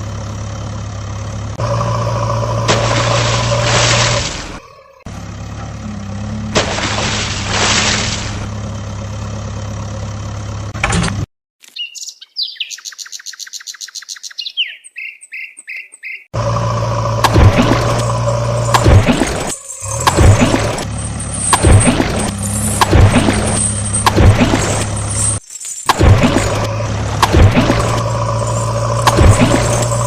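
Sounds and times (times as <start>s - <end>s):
bird-like trilling call: 11.7s - 16.3s.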